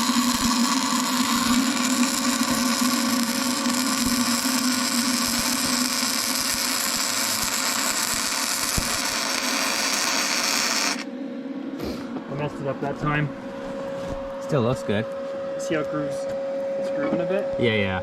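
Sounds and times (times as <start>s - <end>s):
welder arc crackling hiss: 0.0s - 11.1s.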